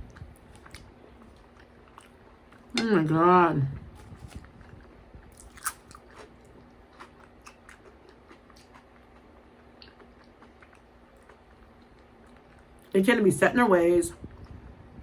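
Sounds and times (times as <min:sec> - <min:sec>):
person chewing food: 0:00.0 - 0:02.8, 0:04.0 - 0:12.9.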